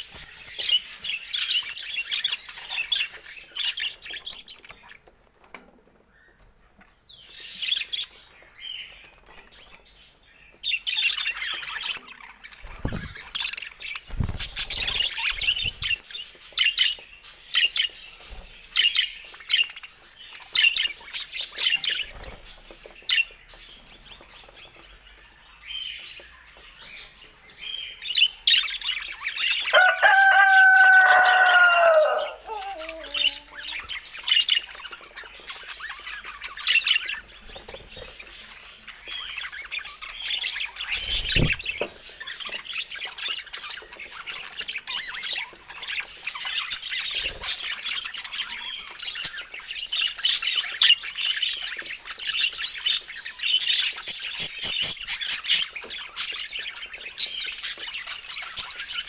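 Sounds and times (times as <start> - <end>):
budgerigars chattering and chirping: 0.0 - 59.0
wing flutters: 12.6 - 16.0, 40.9 - 41.9.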